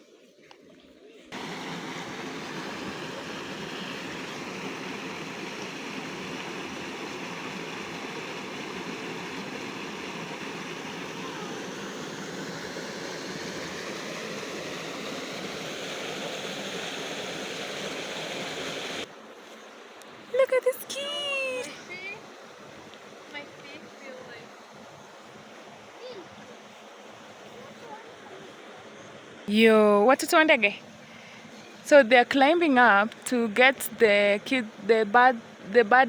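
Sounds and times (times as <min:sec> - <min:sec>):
river water rushing: 0:01.3 - 0:29.4.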